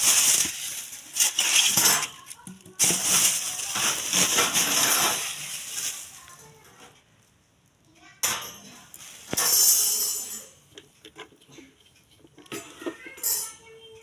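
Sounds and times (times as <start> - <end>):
packaging rustling and crinkling: 0.0 - 6.8.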